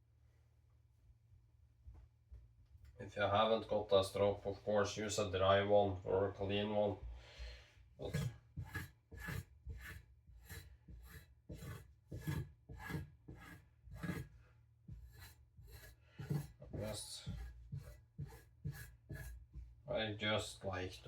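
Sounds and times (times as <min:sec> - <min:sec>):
knife scraping on strop: 0:08.0 - 0:14.3, 0:14.9 - 0:19.6.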